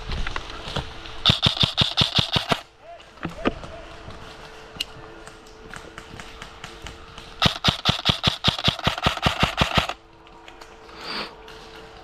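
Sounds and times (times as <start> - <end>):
airsoft rifle rapid firing: 1.2 - 2.6, 7.4 - 10.0.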